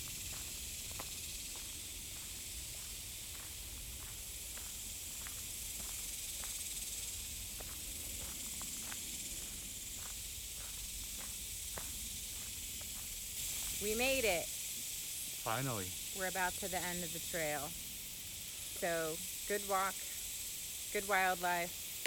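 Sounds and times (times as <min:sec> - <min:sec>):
footsteps on trail: 0:00.0 - 0:14.1
cicadas buzzing: 0:00.0 - 0:22.0.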